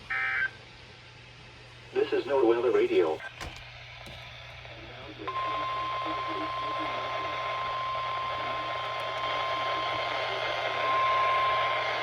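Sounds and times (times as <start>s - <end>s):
radio static hiss: 1.9s - 3.2s, 4.1s - 12.0s.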